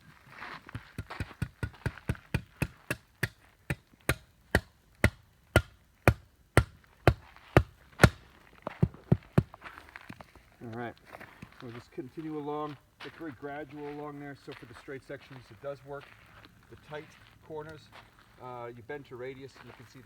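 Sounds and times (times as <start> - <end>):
hammer striking steel edging: 0.9 - 8.2.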